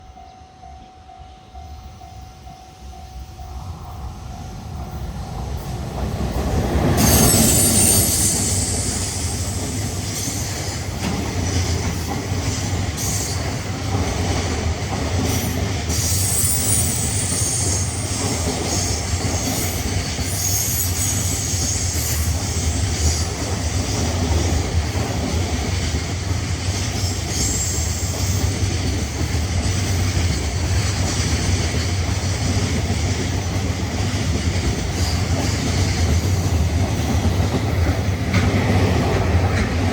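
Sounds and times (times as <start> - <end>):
electric locomotive passing: 0.0 - 39.9
wheels clicking over rail joints: 5.6 - 21.2
wheels squealing: 6.9 - 10.6.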